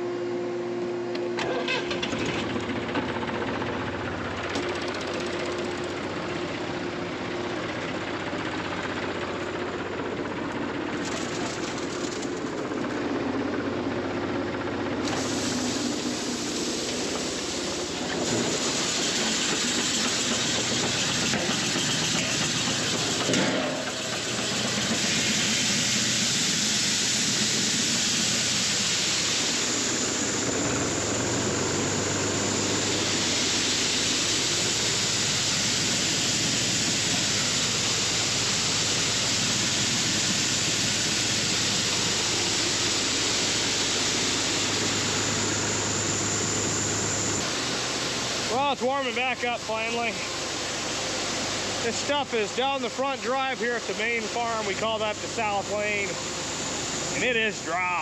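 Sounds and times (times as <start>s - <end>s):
farm machinery running: 1.1s - 58.0s
loud even hiss: 15.0s - 58.0s.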